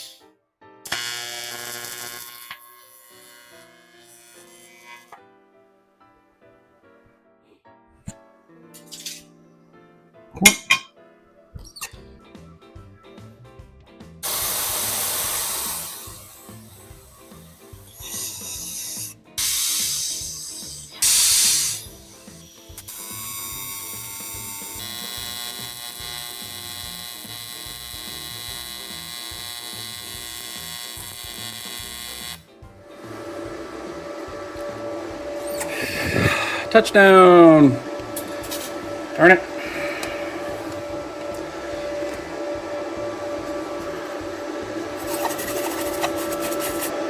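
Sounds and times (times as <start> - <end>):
welding arc buzzing: 0.9 - 5.1, 14.2 - 47.0
short bursts of hiss: 14.2 - 24.6, 44.8 - 47.0.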